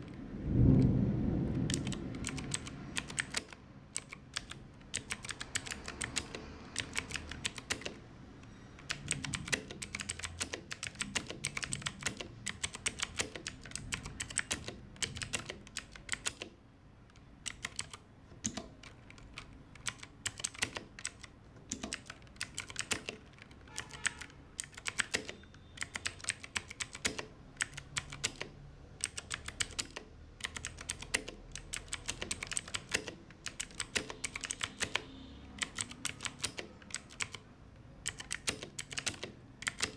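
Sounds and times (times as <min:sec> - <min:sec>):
mechanical keyboard typing: 0:01.5 - 0:39.9.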